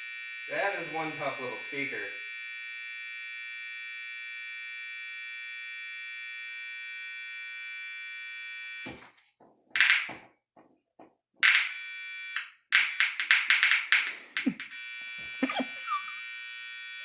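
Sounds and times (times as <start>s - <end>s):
high-pitched tweeter buzz: 0.0s - 7.2s, 9.8s - 10.2s, 11.4s - 17.0s
loud crackling bursts: 9.8s - 10.2s, 11.4s - 11.8s, 12.4s - 15.9s.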